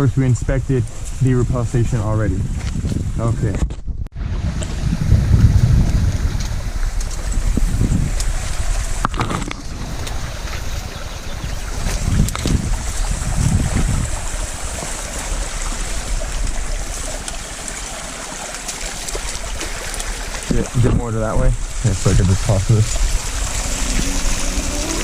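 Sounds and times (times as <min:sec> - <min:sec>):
wind buffeting microphone: 0:00.0 - 0:18.1
waterfall rushing: 0:23.0 - 0:25.0.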